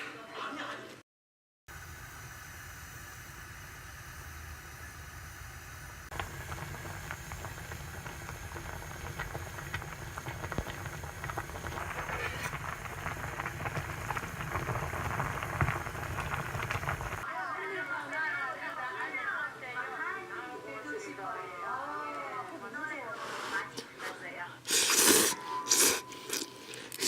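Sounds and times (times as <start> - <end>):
food sizzling in a frying pan: 1.7 - 17.3.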